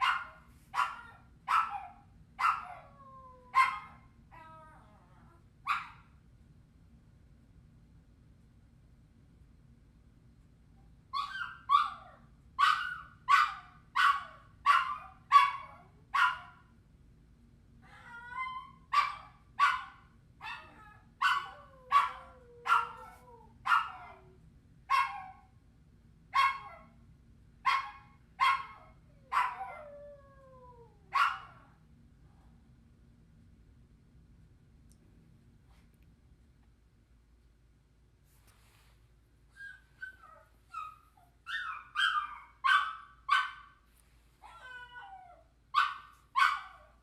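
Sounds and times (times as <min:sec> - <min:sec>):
dog yelping: 0:00.0 - 0:02.9, 0:03.5 - 0:04.6, 0:11.2 - 0:16.5, 0:17.9 - 0:24.2, 0:27.7 - 0:30.0, 0:31.1 - 0:31.6, 0:39.6 - 0:43.6, 0:44.4 - 0:47.0.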